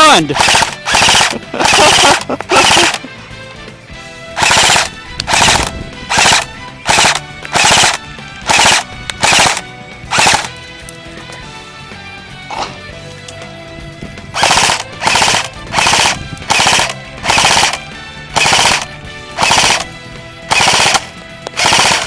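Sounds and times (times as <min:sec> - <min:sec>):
airsoft gun bursts: 0:00.0 - 0:03.1, 0:04.4 - 0:10.5, 0:14.4 - 0:17.8, 0:18.4 - 0:19.9, 0:20.5 - 0:22.0
faint background music: 0:00.0 - 0:22.0.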